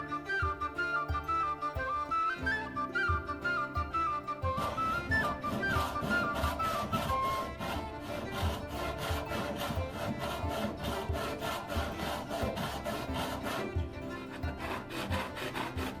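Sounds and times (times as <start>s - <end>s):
background music with flute: 0.0s - 16.0s
hand saw cutting wood: 4.4s - 16.0s.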